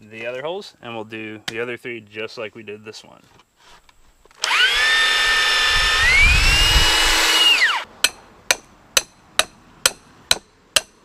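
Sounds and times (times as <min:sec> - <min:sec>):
electric drill whining: 0:04.4 - 0:07.8
hammer strikes: 0:08.0 - 0:11.0.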